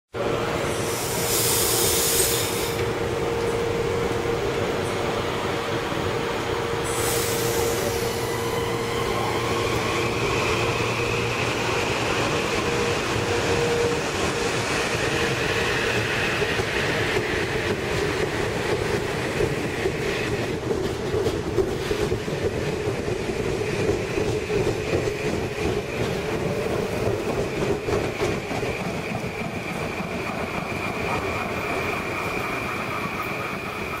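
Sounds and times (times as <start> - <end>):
electric train whine: 0.2 - 34.0
train wheels knocking: 12.5 - 34.0.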